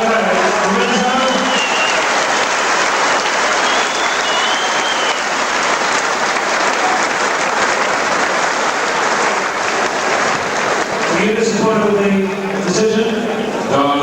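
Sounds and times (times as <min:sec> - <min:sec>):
crowd applauding and cheering: 0:00.0 - 0:12.7
faint whistle: 0:00.9 - 0:02.1, 0:03.5 - 0:05.4.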